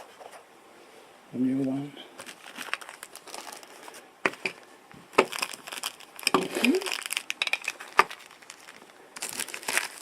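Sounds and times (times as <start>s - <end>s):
packaging crinkling: 2.2s - 10.0s.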